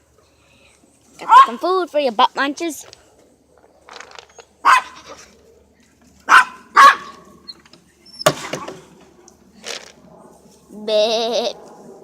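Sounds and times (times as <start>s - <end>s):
dog barking: 1.2s - 1.6s, 4.6s - 5.2s, 6.3s - 7.2s.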